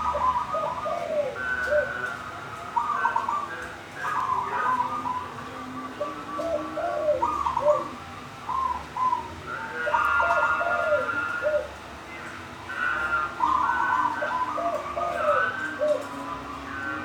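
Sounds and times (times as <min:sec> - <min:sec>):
dove cooing: 0:00.0 - 0:11.9, 0:12.7 - 0:17.0.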